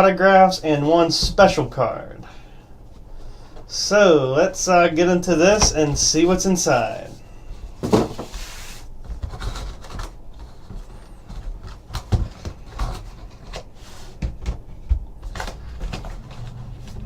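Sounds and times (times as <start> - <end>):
rustling wrapping and cardboard: 5.3 - 17.0.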